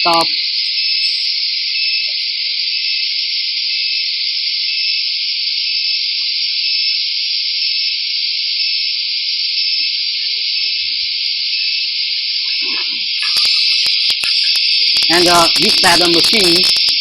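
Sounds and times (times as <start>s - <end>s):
high-pitched hiss: 0.0s - 1.6s, 12.7s - 17.0s.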